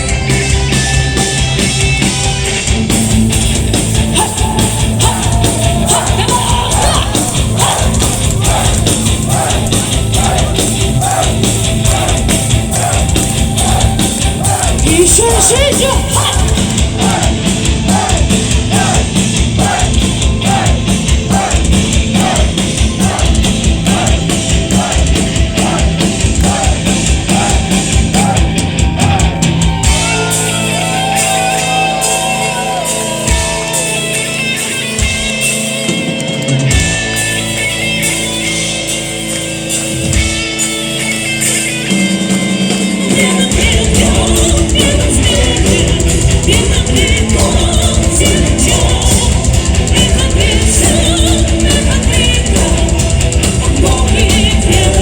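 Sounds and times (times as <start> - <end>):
metal band playing: 0.0 - 55.0
pounding drums: 2.7 - 32.5, 43.2 - 55.0
person singing: 4.1 - 21.6, 43.0 - 55.0.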